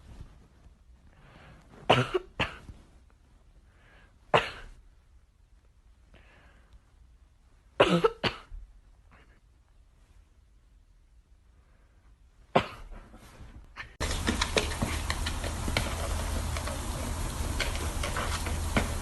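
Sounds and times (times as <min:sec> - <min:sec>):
sharp coughs: 0:01.9 - 0:02.7, 0:04.4 - 0:04.8, 0:07.8 - 0:08.6, 0:12.6 - 0:13.1.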